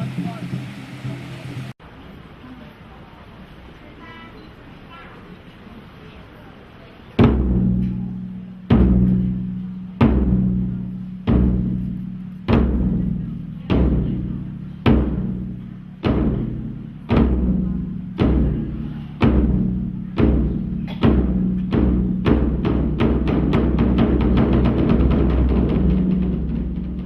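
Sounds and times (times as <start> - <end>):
large temple drum beats: 0.0 - 1.8, 7.2 - 27.0.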